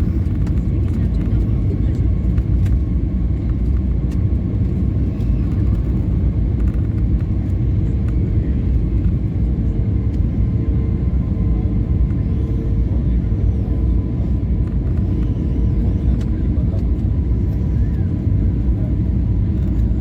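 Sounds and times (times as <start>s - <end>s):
aircraft cabin engine roar: 0.0s - 20.0s.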